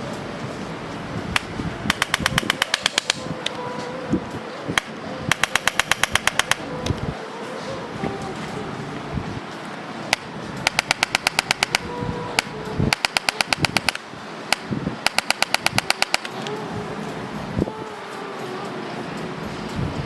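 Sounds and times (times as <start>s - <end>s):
adjusting gun rapid clicks: 1.4s - 3.2s, 4.8s - 6.6s, 10.1s - 11.9s, 12.9s - 16.5s.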